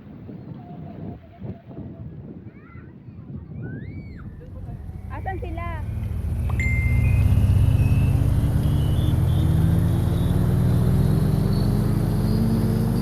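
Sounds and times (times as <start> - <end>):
vehicle engine accelerating: 4.2 - 13.0.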